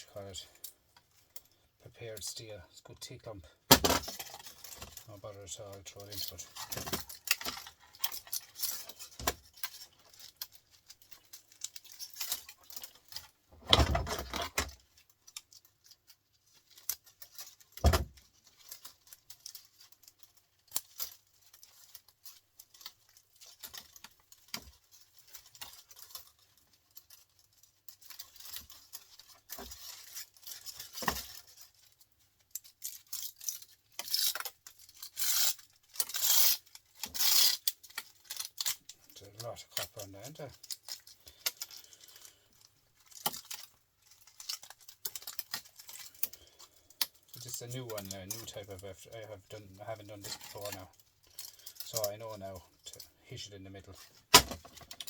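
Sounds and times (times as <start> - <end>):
metal parts clinking: 32.5 - 48.5
loud rasping tearing noises: 32.7 - 52.4.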